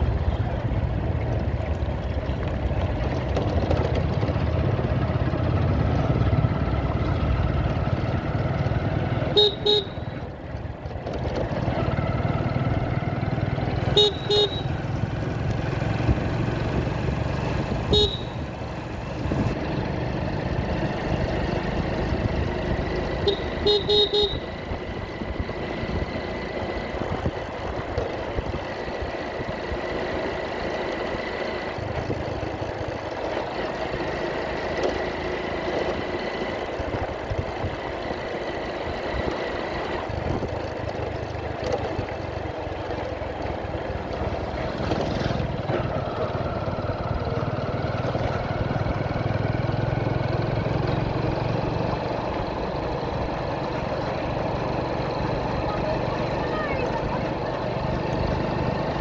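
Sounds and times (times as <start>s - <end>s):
motorcycle engine: 0.0s - 59.0s
road noise: 0.0s - 59.0s
horn toots: 9.2s - 10.3s, 13.8s - 15.0s, 17.7s - 18.6s, 23.1s - 24.8s.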